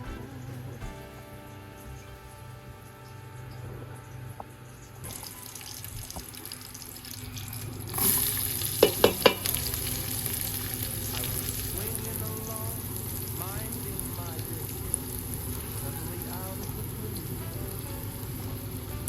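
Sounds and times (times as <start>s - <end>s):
food sizzling in hot oil: 5.0s - 19.0s.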